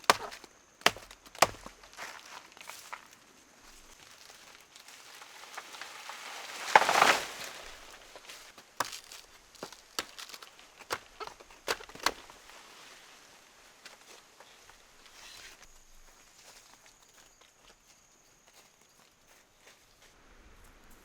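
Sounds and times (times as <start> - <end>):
plant material rustling: 0.0 - 13.3.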